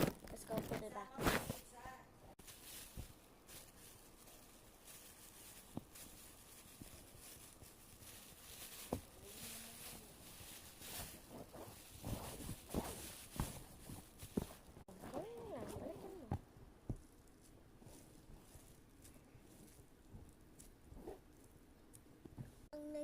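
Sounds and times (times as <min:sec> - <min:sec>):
plastic wrapping rustling: 0:00.0 - 0:21.8
knocks and scrapes: 0:10.8 - 0:17.1.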